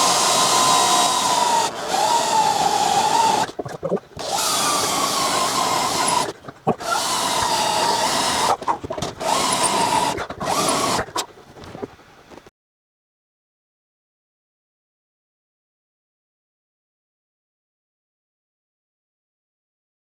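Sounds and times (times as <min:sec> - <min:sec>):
electric drill whining: 0:00.0 - 0:03.6, 0:04.2 - 0:11.3.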